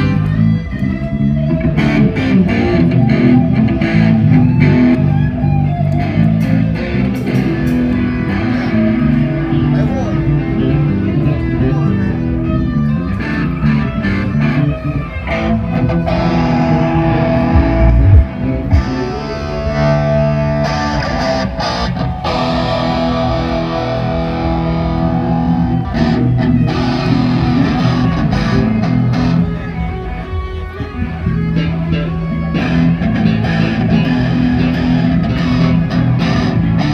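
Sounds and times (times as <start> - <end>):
bass guitar: 0.0 - 36.9
electric guitar playing: 0.0 - 36.9
loud low thumps: 17.1 - 19.0.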